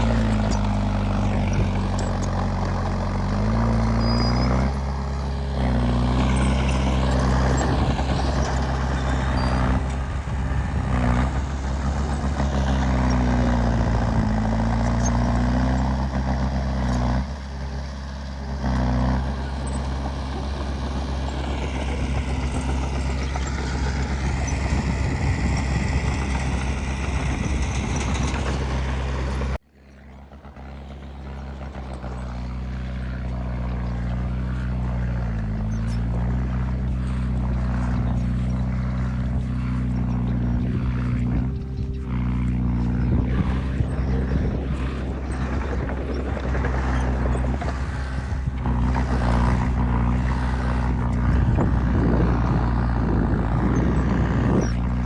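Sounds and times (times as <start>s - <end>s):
heavy diesel engine running: 0.0s - 55.0s.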